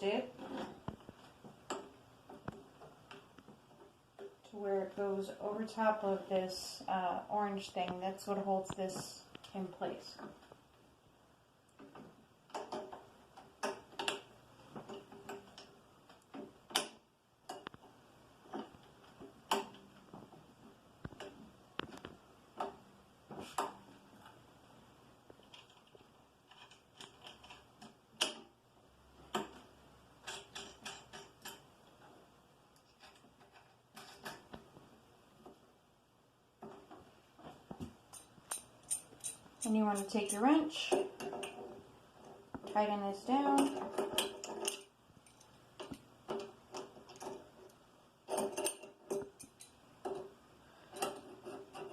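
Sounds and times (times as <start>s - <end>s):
small metal clicks and taps: 11.7s - 17.9s, 25.3s - 28.5s, 29.3s - 31.7s, 37.8s - 42.8s, 48.3s - 50.3s.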